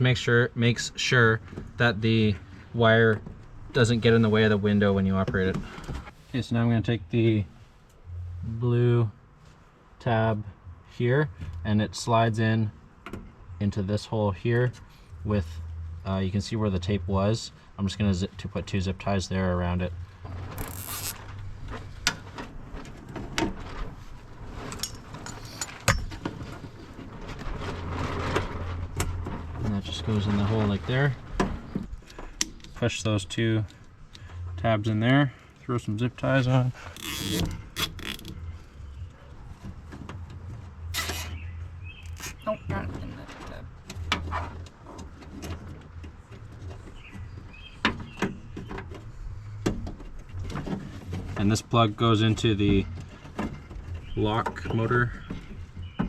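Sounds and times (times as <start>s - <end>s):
low steady hum: 0.0s - 46.6s
zip ties clicking and knocking: 37.0s - 38.4s.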